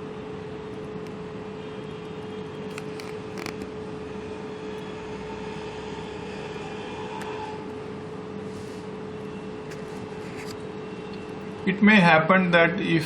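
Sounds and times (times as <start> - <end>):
background hum and hiss: 0.0 - 13.0.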